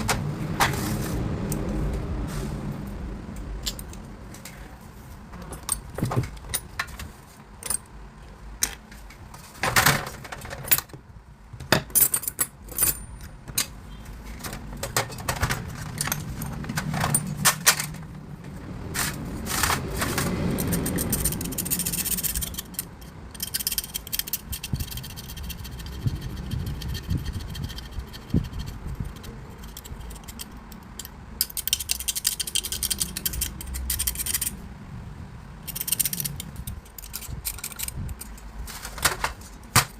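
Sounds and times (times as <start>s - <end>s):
rustling or hissing noise: 0.7s - 3.1s
metal tools clinking and scraping: 5.3s - 8.0s, 11.7s - 18.1s, 18.9s - 26.0s, 26.8s - 34.6s, 35.6s - 39.6s.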